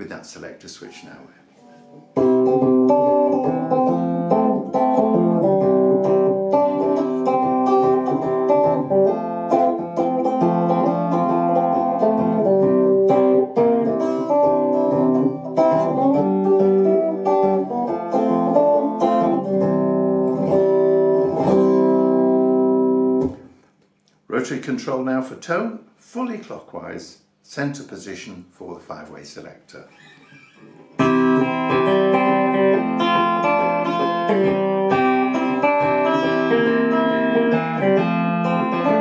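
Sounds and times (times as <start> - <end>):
electric guitar notes and chords: 2.1 - 23.6, 30.7 - 39.0.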